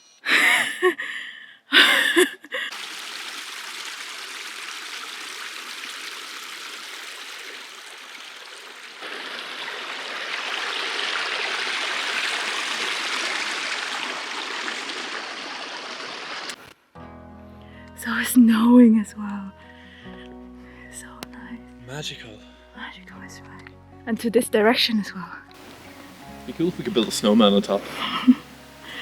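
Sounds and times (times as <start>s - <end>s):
stream water rushing: 2.7s - 16.6s, 25.6s - 29.0s.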